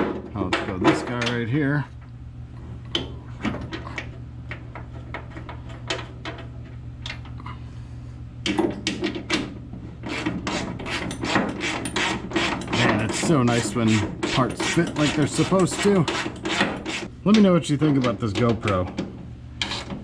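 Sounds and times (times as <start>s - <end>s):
steady low hum: 0.0s - 20.0s
metal clicks and scraping: 8.4s - 20.0s.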